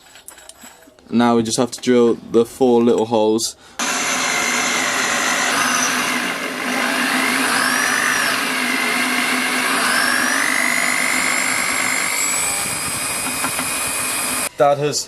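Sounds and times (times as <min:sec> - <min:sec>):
electric drill boring metal: 0:03.8 - 0:14.5.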